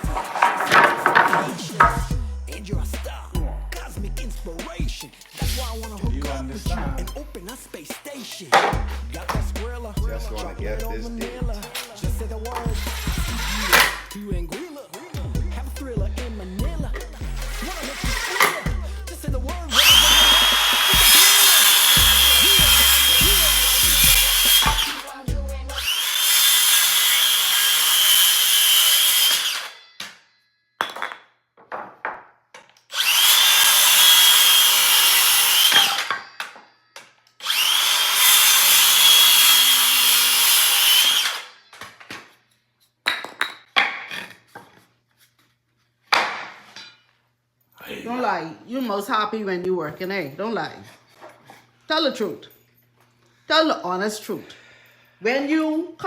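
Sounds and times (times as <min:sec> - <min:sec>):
music with bass beat: 0:00.0 - 0:00.4, 0:01.5 - 0:21.2, 0:22.0 - 0:25.9
power tool motor whine: 0:12.6 - 0:14.2, 0:17.3 - 0:18.7, 0:19.7 - 0:25.1, 0:25.8 - 0:29.8, 0:32.9 - 0:36.2, 0:37.4 - 0:41.5.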